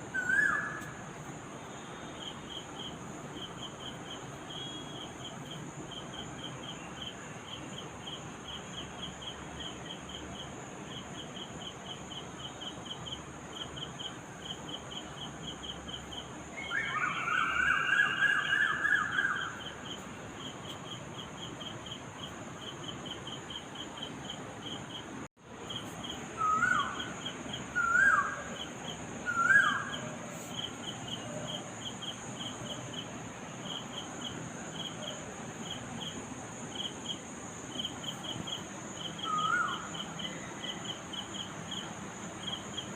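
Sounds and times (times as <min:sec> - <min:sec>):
crickets chirping: 0:00.0 - 0:42.9
high insect drone: 0:00.0 - 0:42.9
bird trilled call: 0:26.4 - 0:27.1, 0:27.8 - 0:28.6, 0:29.3 - 0:30.1.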